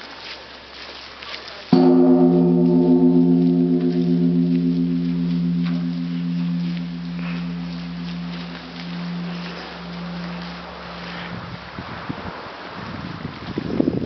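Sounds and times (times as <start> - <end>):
temple bell ringing: 1.8 - 11.8.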